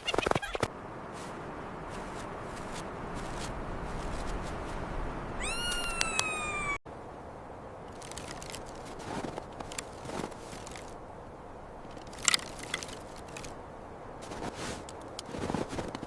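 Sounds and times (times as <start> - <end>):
soft crackles and clicks: 0.0 - 6.8, 7.9 - 11.0, 11.9 - 13.6
steady low hiss: 0.7 - 14.4.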